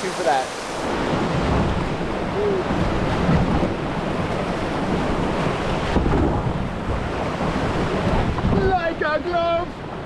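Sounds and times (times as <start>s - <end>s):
whitewater rushing: 0.0s - 3.2s
wind rumbling on microphone: 0.0s - 8.9s.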